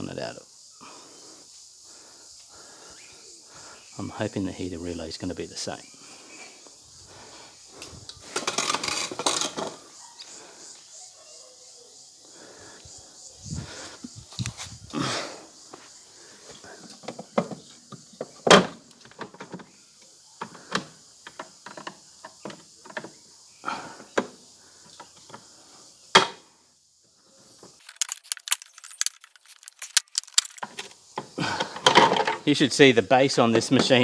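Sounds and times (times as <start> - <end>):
dishwasher parts clicking and clattering: 27.8 - 30.9
small rattling clicks: 27.8 - 30.9.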